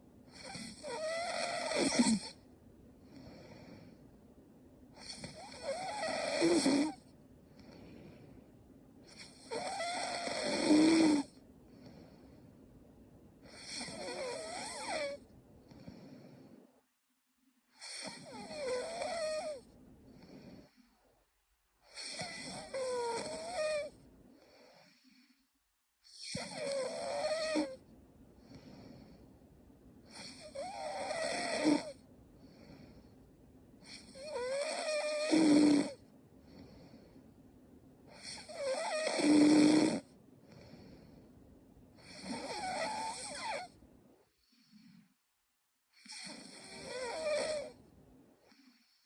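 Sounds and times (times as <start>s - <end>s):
woman snoring: 0.3s - 2.4s, 4.9s - 8.3s, 9.0s - 12.4s, 13.4s - 16.7s, 17.7s - 21.0s, 21.8s - 27.8s, 30.0s - 33.2s, 33.8s - 37.2s, 38.1s - 41.2s, 42.0s - 45.2s, 45.9s - 47.8s
faint breathing: 1.9s - 5.7s, 6.9s - 9.6s, 11.3s - 16.9s, 19.4s - 26.2s, 27.7s - 30.7s, 31.9s - 34.2s, 36.0s - 38.5s, 40.3s - 45.4s.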